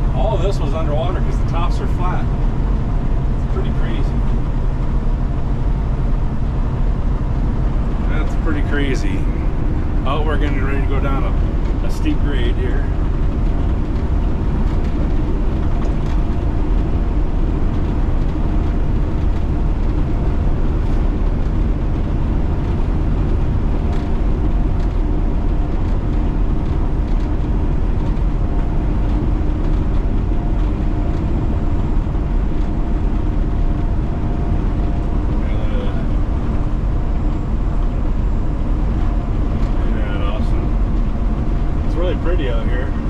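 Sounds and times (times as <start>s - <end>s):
truck engine and road drone: 0.0s - 43.0s.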